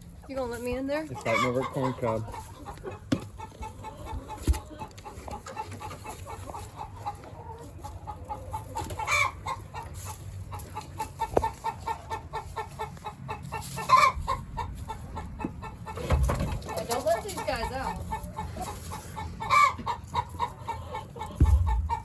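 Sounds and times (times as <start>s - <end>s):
chickens clucking: 0.0s - 22.0s
chicken squawks: 1.2s - 4.7s, 5.5s - 10.2s, 10.8s - 16.8s, 17.4s - 22.0s
dull thumps: 21.4s - 22.0s.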